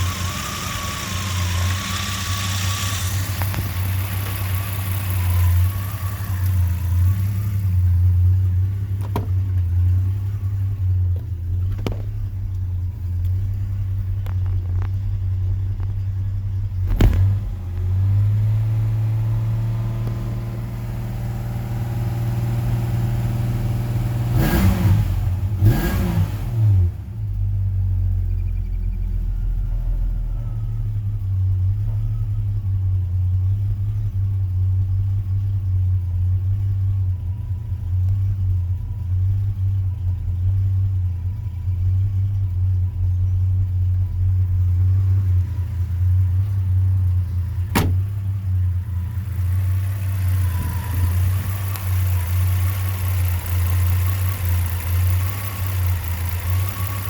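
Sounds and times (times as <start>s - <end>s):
engine revving: 0.0s - 10.8s, 16.8s - 27.4s, 44.8s - 57.0s
engine idling roughly: 0.0s - 17.9s, 27.2s - 57.0s.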